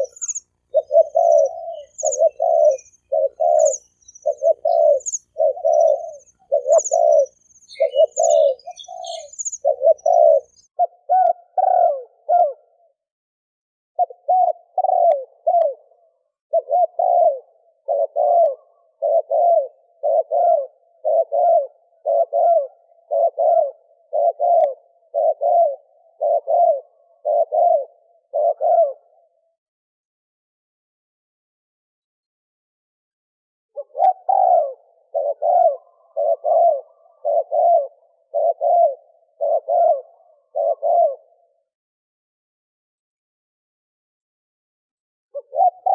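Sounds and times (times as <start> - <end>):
small bird chirping: 0.0 - 11.0
dove cooing: 0.0 - 13.0, 14.0 - 29.6, 33.8 - 41.7, 45.4 - 45.9.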